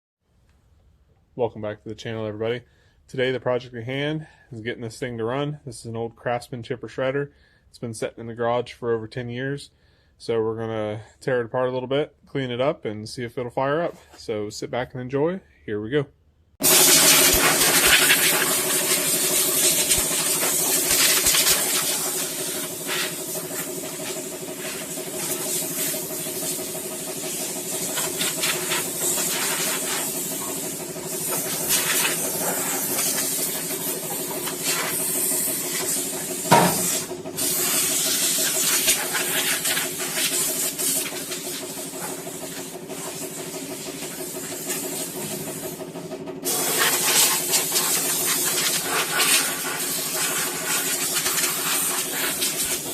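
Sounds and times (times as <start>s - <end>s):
loud hiss: 16.6s - 45.8s, 46.5s - 52.9s
machine humming: 16.6s - 48.9s
sharp knock: 36.5s - 37.1s.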